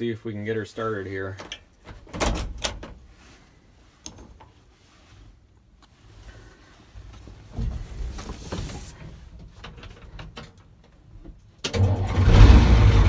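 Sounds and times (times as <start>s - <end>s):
clunks and rattles: 1.4s - 3.0s, 9.3s - 13.0s.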